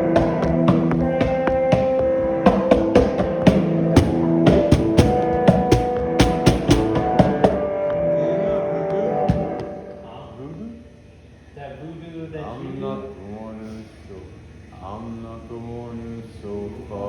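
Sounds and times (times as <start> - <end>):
drum kit hits: 0.0 - 7.9, 9.2 - 9.8
distorted guitar and bass: 0.0 - 10.7.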